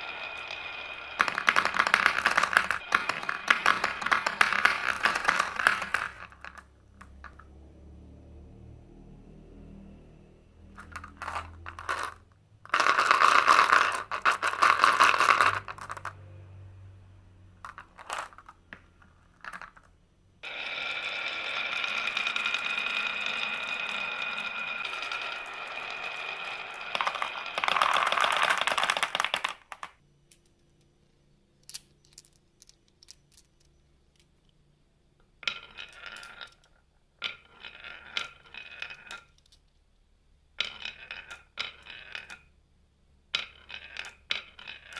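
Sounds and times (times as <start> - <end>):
marbles rolling and clattering: 0.0 - 7.6, 10.7 - 16.2, 17.6 - 34.6, 35.2 - 39.8, 40.5 - 42.6, 43.2 - 44.9
steady ringing tone: 20.4 - 27.4.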